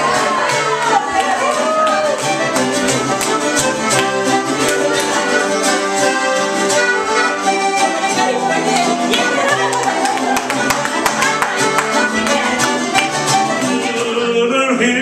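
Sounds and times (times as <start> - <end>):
accordion and fiddle playing: 0.0 - 14.5
person singing: 11.3 - 15.0.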